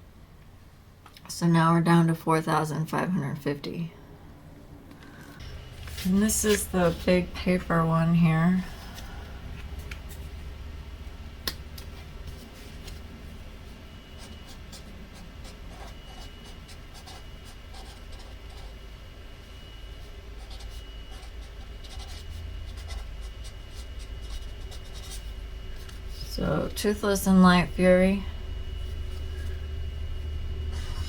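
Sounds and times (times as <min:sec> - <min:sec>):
low room hum: 0:00.0 - 0:31.0
pen scratching on paper: 0:14.2 - 0:18.8, 0:20.4 - 0:25.4.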